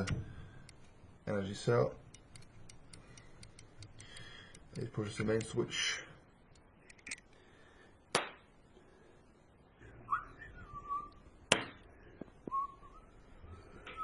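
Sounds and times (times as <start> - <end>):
rising whistle-like tone: 10.0 - 11.2, 12.5 - 13.2.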